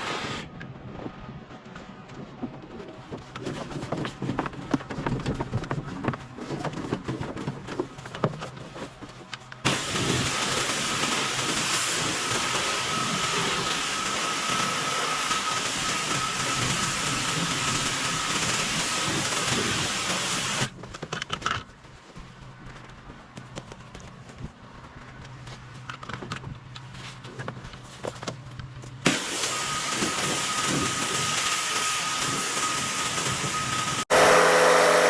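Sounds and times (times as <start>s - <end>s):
hiss of spraying water: 0.0s - 0.5s, 9.7s - 20.7s, 29.1s - 35.0s
steady high whine: 33.5s - 35.0s.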